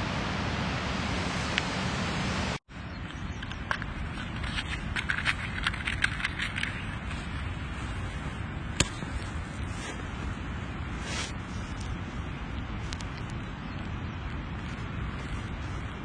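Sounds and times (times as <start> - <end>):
low outdoor rumble: 0.0 - 16.0
light clicks and clatters: 3.0 - 7.5.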